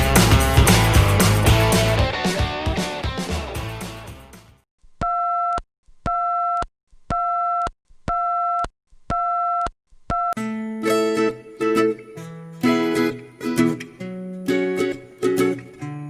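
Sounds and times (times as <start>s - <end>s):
rock music: 0.0s - 4.6s
acoustic guitar music: 10.4s - 16.0s.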